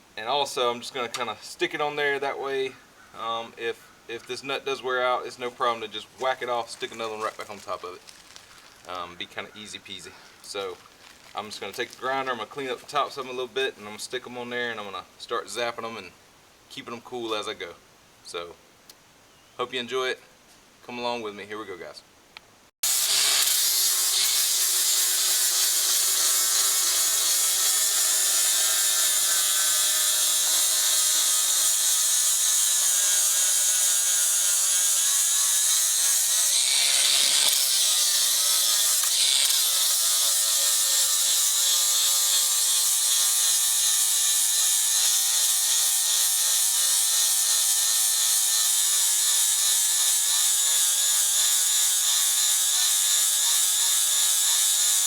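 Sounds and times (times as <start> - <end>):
angle grinder grinding steel: 22.8 - 55.0.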